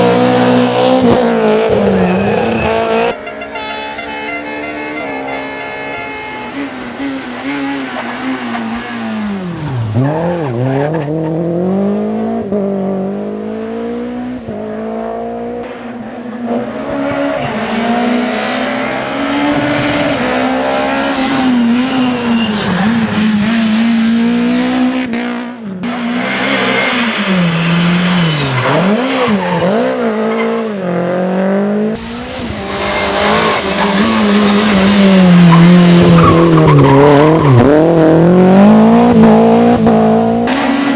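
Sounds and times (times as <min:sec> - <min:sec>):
rally car engines revving: 0:00.0 - 0:40.9.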